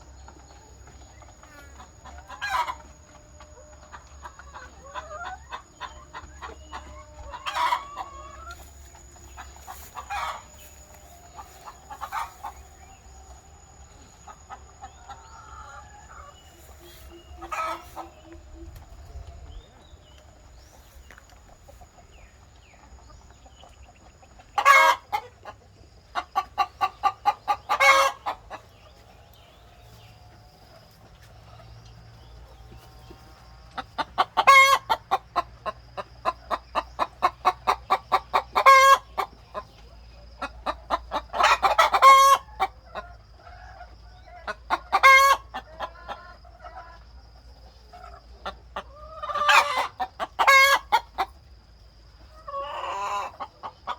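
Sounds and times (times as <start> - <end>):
chickens clucking and cackling: 0.0 - 53.9.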